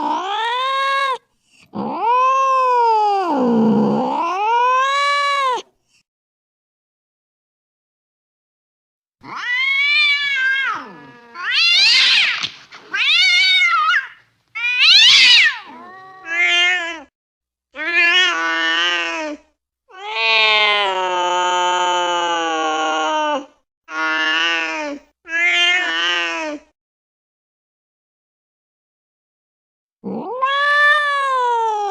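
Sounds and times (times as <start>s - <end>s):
cat yowling: 1.8s - 5.6s, 9.2s - 17.1s, 17.8s - 24.7s, 30.1s - 31.9s.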